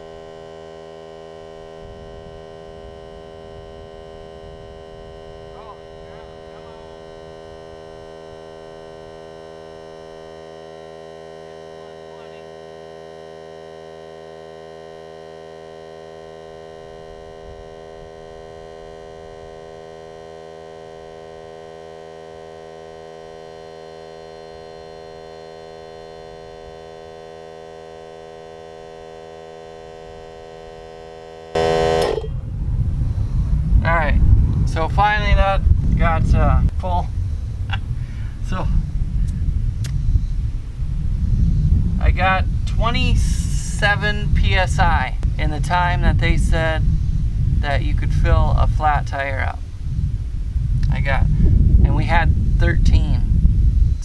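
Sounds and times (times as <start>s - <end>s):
air compressor humming: 0.0s - 33.9s
loud rough burst: 29.7s - 36.6s.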